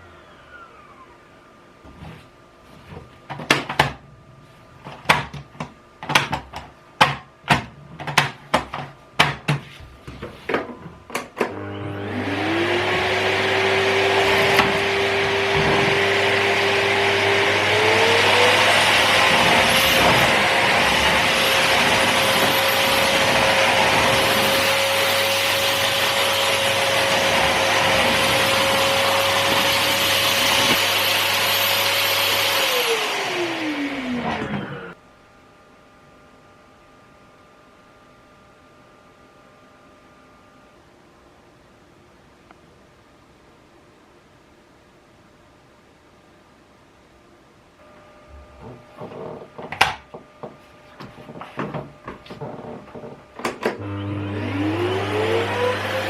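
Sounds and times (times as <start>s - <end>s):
vacuum cleaner motor whine: 0.0s - 3.0s, 10.3s - 35.0s, 47.8s - 56.0s.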